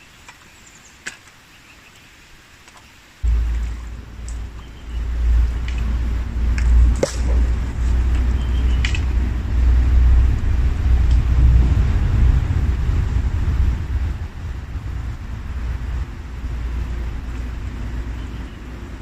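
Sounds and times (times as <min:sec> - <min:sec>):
low loud rumble: 0:03.2 - 0:19.0.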